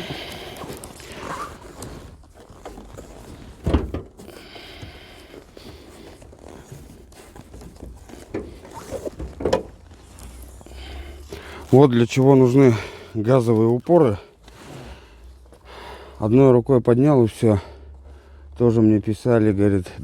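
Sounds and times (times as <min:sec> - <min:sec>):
car hood being raised: 0:03.6 - 0:04.3, 0:08.3 - 0:09.8.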